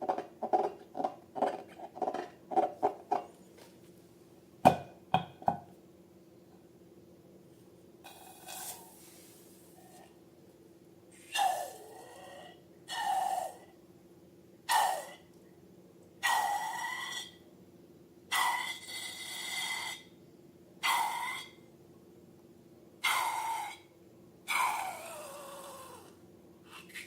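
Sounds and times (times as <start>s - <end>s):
air hissing from balloons: 8.1s - 10.0s.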